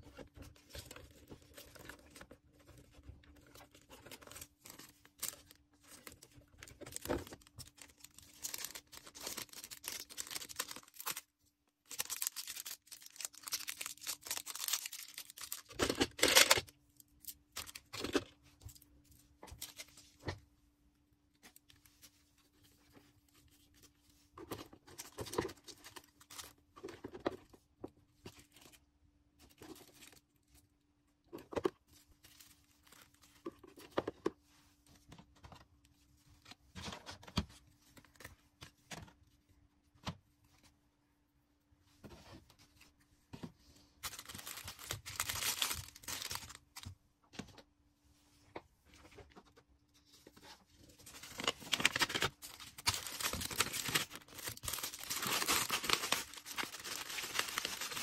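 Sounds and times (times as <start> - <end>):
plastic and paper rustling: 0.0 - 20.4, 21.4 - 30.7, 42.0 - 47.0, 48.9 - 58.0.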